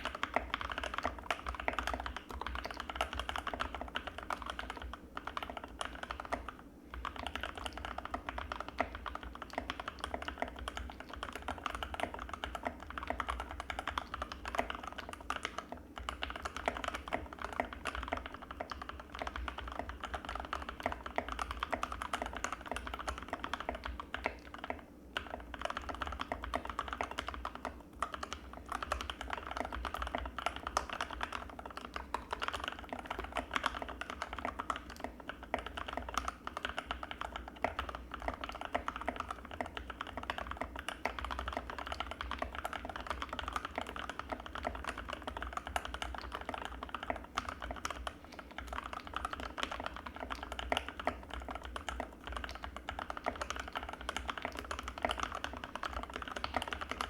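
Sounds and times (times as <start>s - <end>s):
mechanical keyboard typing: 0.0s - 57.0s.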